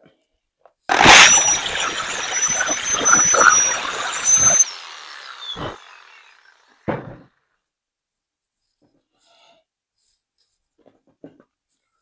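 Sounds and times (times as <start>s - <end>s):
power saw cutting plywood: 0.9s - 7.2s.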